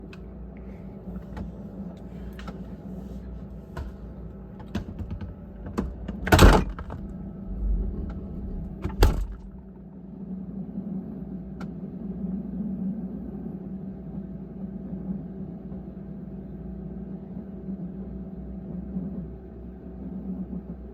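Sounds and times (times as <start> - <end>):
refrigerator humming: 0.0 - 10.2.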